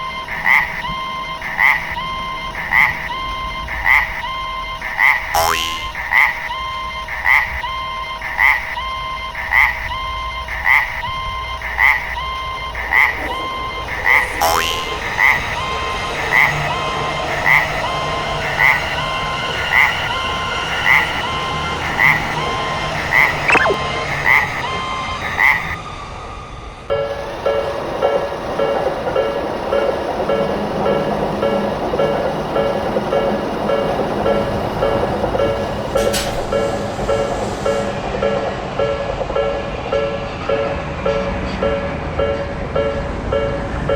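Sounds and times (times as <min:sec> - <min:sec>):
passing train rumble: 0:00.0 - 0:04.9, 0:06.5 - 0:43.9
level crossing warning bell: 0:26.9 - 0:43.9.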